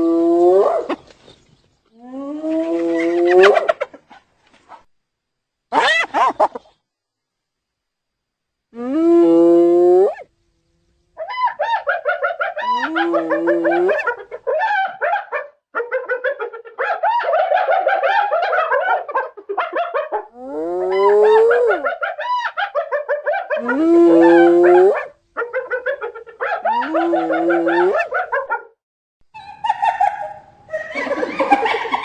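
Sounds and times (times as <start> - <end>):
hyenas giggling: 2.5 - 4.8, 5.8 - 6.8, 11.2 - 28.7, 29.4 - 32.0
hyena long drawn-out calls: 5.7 - 6.8, 11.2 - 28.4.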